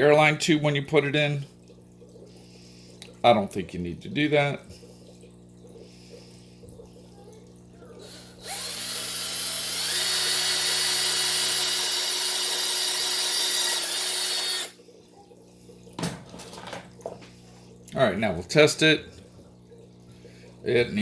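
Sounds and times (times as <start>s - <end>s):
electric drill whining: 8.4s - 14.8s.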